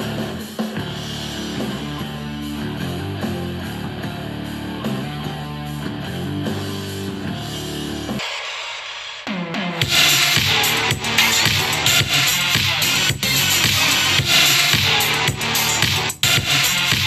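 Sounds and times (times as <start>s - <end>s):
distorted electric guitar strumming: 0.0s - 8.2s
rock music through speaker: 0.0s - 17.0s
steady drum beat: 6.4s - 17.0s.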